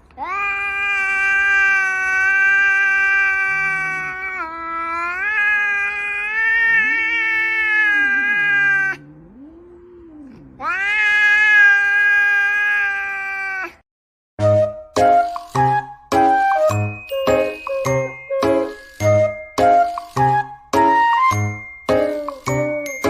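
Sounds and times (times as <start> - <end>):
cat yowling: 0.2 - 13.8
low wavering moan: 8.0 - 10.6.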